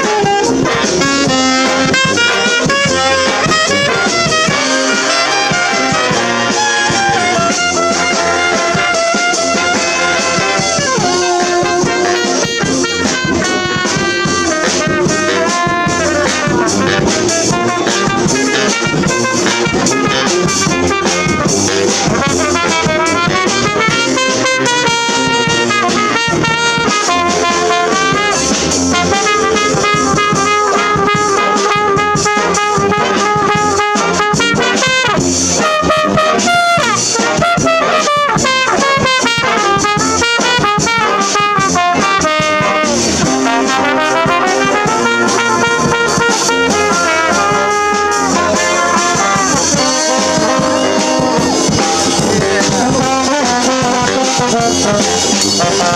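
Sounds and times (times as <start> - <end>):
brass band playing: 0.0 - 55.9
steady percussion: 0.0 - 55.9.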